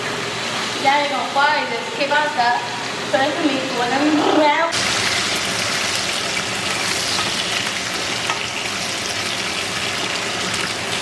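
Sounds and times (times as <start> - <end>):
rice sizzling in oil: 4.8 - 11.0.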